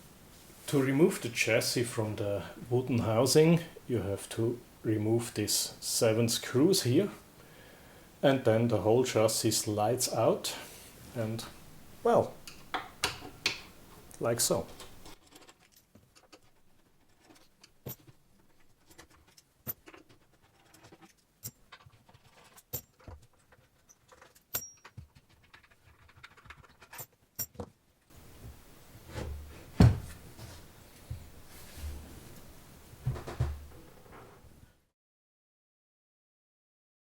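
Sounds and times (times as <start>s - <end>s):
background hiss: 0.0s - 15.2s, 28.1s - 34.8s.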